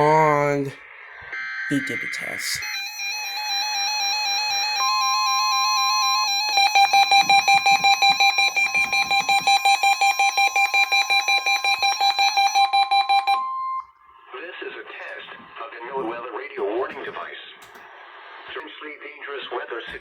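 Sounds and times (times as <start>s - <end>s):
steady warning alarm tone: 0.0s - 14.3s
warbling electronic alarm tone: 0.0s - 14.3s.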